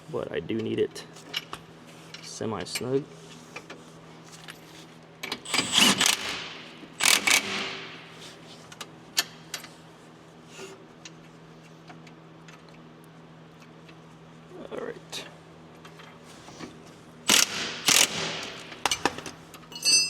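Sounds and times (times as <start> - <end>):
tool handling clicks: 5.3 - 8.0
ratchet wrench clicking: 5.5 - 7.9, 17.3 - 19.0.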